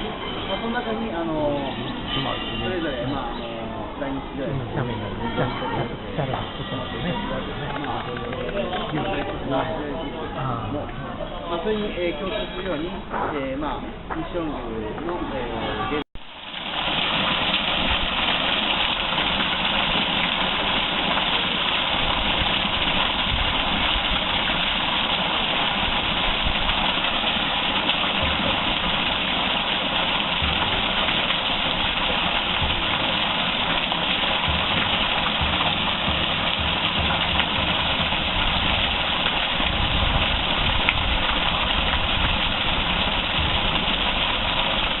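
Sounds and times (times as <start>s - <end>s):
water rushing over waterfall: 16.3s - 45.0s.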